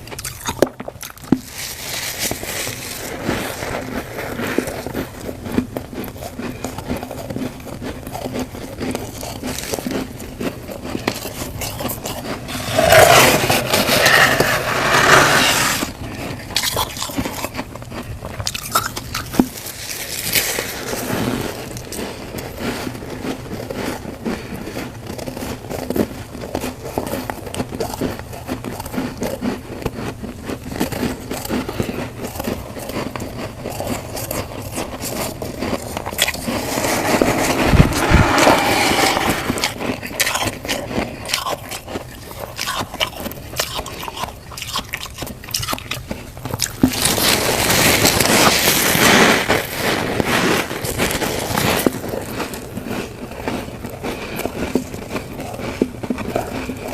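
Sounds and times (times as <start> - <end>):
frost scraping crunch: 0.2 - 56.9
frost crackling: 35.8 - 39.9.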